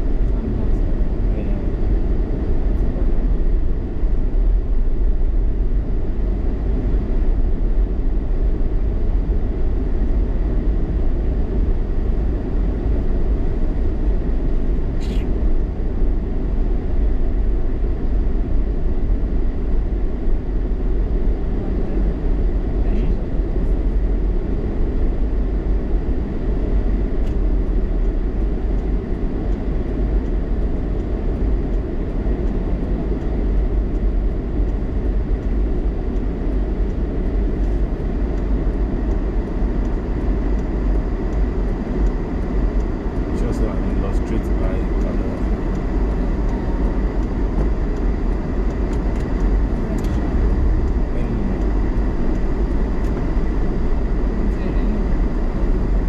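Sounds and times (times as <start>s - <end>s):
car engine and tyre rumble: 0.0s - 56.0s.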